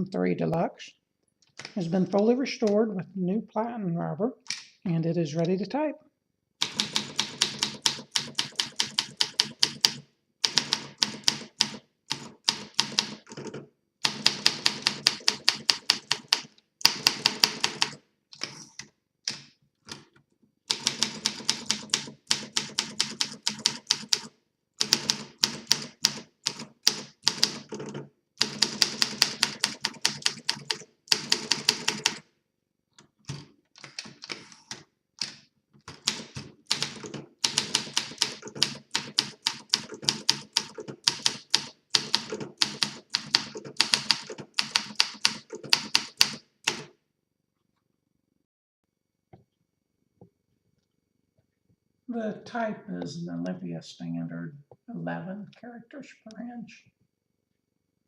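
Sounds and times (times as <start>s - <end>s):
typewriter typing: 6.6s - 18.6s, 20.7s - 32.2s, 33.2s - 46.9s.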